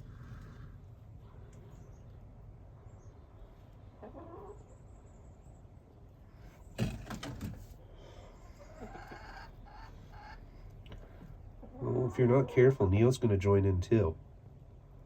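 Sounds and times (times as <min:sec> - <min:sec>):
hens clucking: 0:03.6 - 0:04.9, 0:08.0 - 0:13.0.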